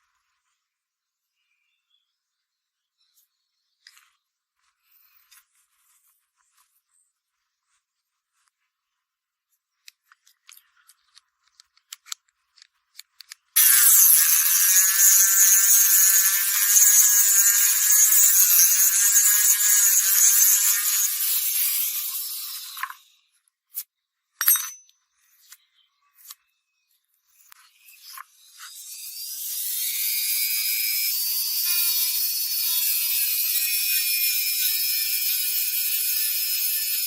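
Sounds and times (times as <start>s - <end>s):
small power tool running: 13.6s - 23.2s, 27.7s - 37.0s.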